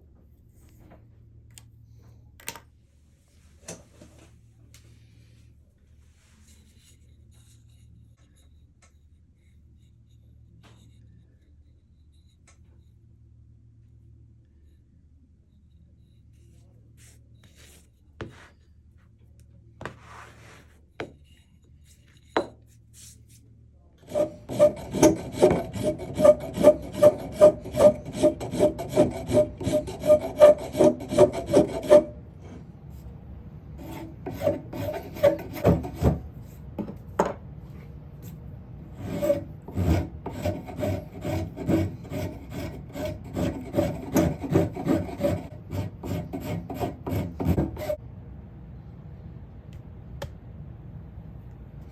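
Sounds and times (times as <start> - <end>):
hand file rasping wood: 24.1 - 32.6, 33.8 - 36.2, 39.0 - 48.0.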